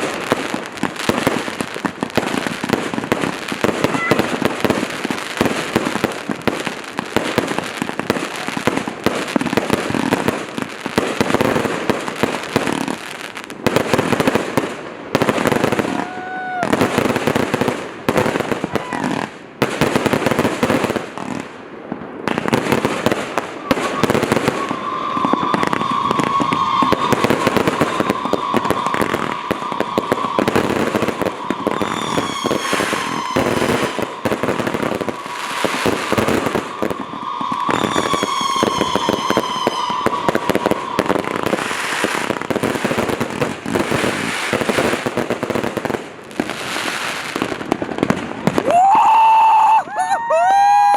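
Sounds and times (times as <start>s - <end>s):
fireworks bangs and crackling: 0.0s - 50.9s
whistling glides: 23.5s - 44.7s
steady high tone: 23.6s - 43.4s.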